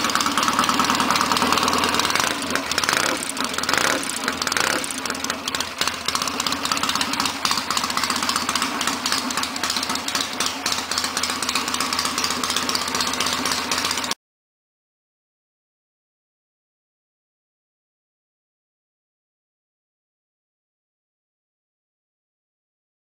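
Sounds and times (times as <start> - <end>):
motorcycle engine running: 0.0 - 14.2.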